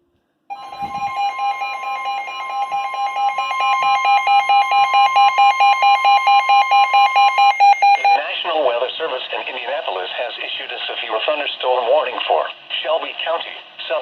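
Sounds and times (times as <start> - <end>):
rapid alarm beeping: 0.5 - 8.4
steady high alert tone: 0.5 - 8.5.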